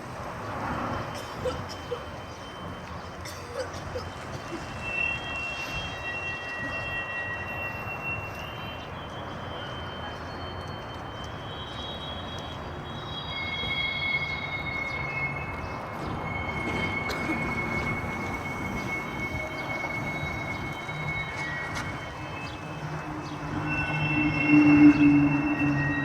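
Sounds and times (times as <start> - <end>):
high-pitched metallic squealing: 1.1 - 26.0.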